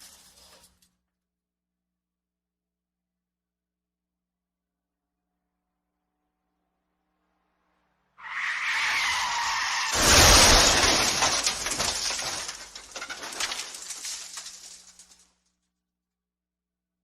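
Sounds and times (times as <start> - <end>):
tyres screeching: 8.2 - 11.9
debris clattering: 9.0 - 15.4
loud crash impact: 9.2 - 14.8.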